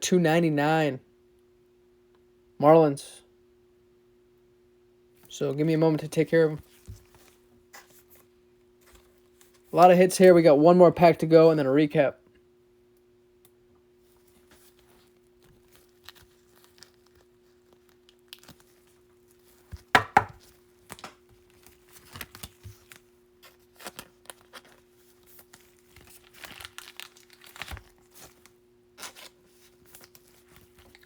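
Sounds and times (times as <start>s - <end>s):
plastic sleeves rustling and crinkling: 14.0s - 31.0s
loud plastic crackle: 23.7s - 28.5s.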